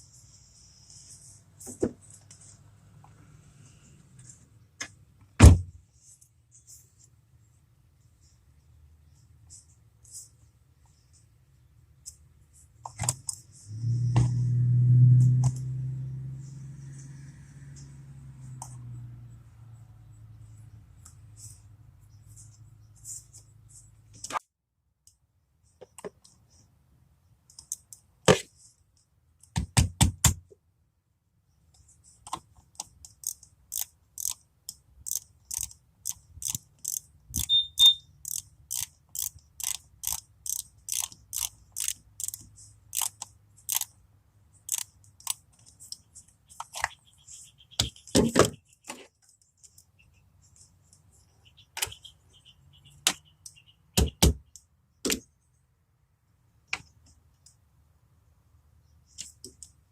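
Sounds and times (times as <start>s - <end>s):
sharp mechanical clicks: 32.8s - 43.9s, 44.7s - 45.4s.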